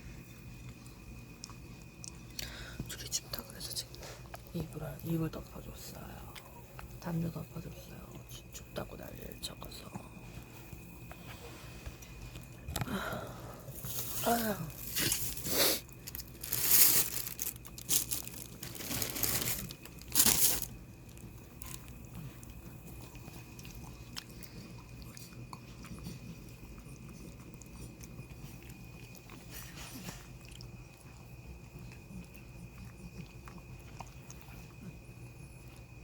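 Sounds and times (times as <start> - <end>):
dog crunching food: 14.8 - 34.9.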